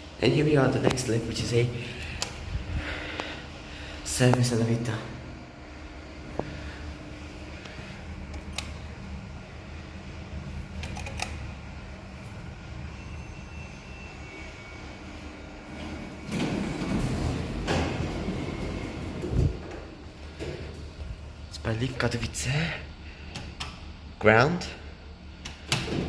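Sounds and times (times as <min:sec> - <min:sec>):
low mechanical hum: 0:00.0 - 0:26.0
elevator rattling and rushing: 0:15.6 - 0:21.2.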